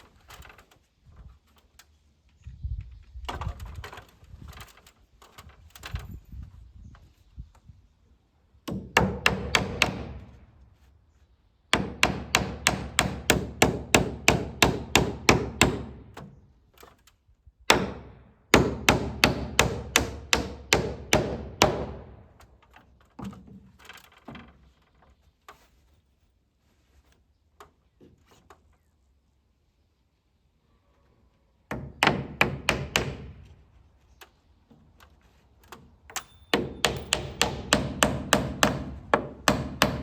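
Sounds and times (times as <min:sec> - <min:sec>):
hammer driving nails into wood: 0:08.7 - 0:10.4, 0:11.7 - 0:16.4, 0:17.7 - 0:22.5, 0:31.7 - 0:33.5, 0:35.7 - 0:40.0.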